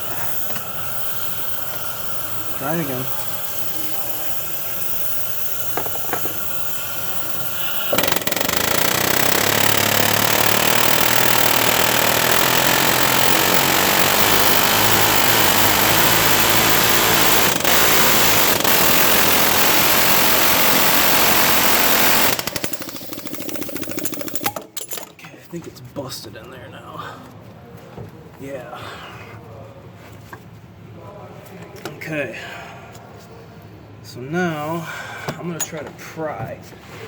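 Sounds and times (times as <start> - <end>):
air hammer running: 0.0 - 24.6.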